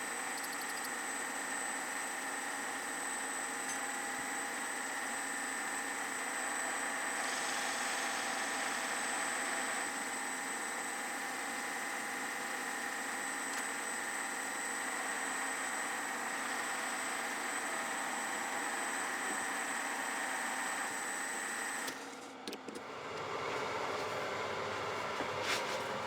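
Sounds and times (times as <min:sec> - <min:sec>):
lathe humming and whining: 0:00.0 - 0:22.1, 0:22.7 - 0:26.0
hiss: 0:07.1 - 0:08.5.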